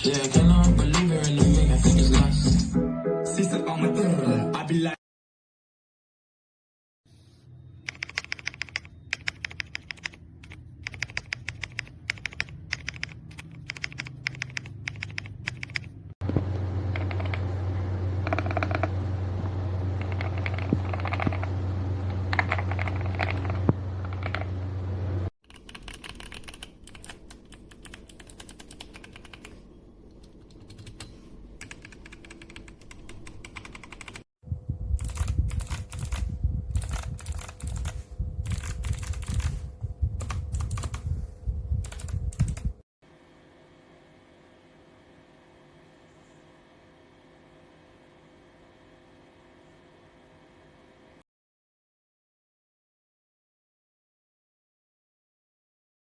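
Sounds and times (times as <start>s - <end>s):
steady low hum: 7.5s - 51.2s
mechanical keyboard typing: 7.9s - 15.9s, 16.9s - 17.4s, 18.2s - 18.9s, 20.0s - 21.5s, 22.1s - 24.5s, 25.4s - 29.6s, 30.2s - 34.3s, 35.0s - 39.6s, 40.2s - 41.0s, 41.8s - 42.7s.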